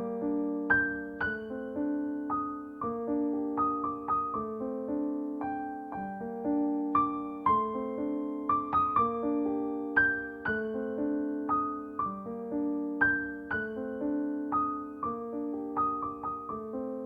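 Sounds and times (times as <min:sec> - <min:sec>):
gentle piano music: 0:00.0 - 0:17.0.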